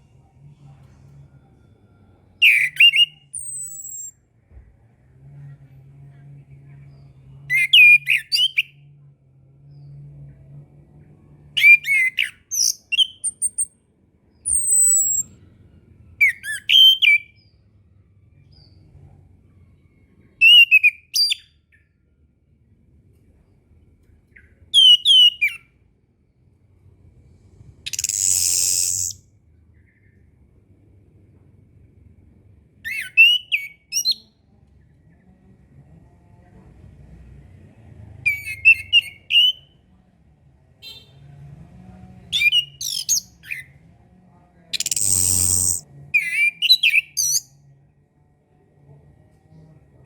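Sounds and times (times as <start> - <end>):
thrush whistling song: 2.4 - 4.2, 14.4 - 15.4, 24.4 - 25.7, 27.9 - 29.2, 32.9 - 34.2, 44.8 - 47.5.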